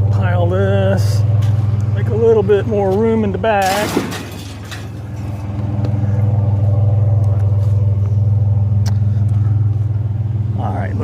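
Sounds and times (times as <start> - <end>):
vehicle engine humming: 0.0 - 11.0.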